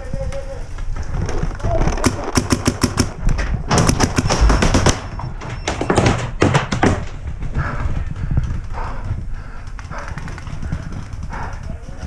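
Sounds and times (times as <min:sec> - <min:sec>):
paintball marker firing: 0:02.0 - 0:05.0.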